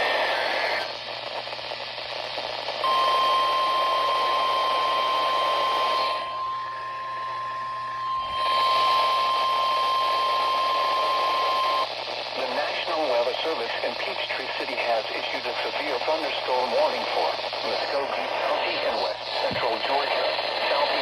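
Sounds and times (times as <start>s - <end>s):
radio hiss: 0.0s - 21.0s
steady alarm tone: 2.8s - 11.9s.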